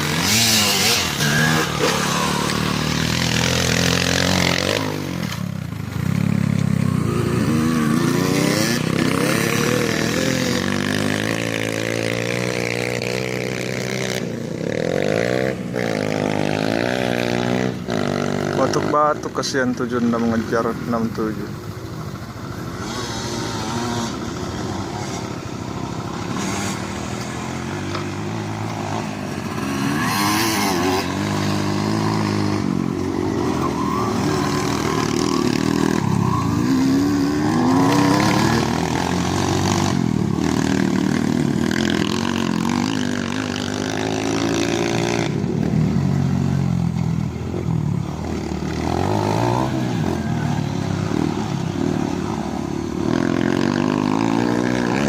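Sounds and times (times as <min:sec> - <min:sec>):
engines running and revving: 0:00.0 - 0:55.0.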